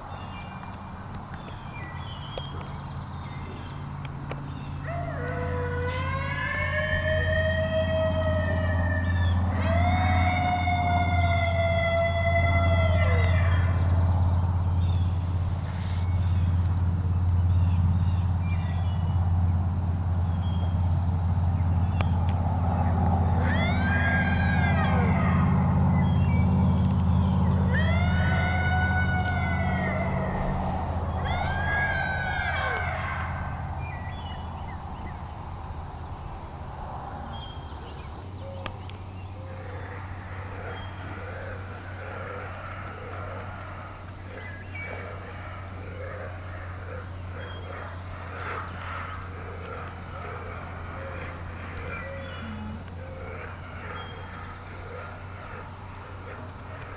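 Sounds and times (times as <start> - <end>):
low hum: 3.2 - 38.3, 48.7 - 54.4
small birds chirping: 13.2 - 35.4.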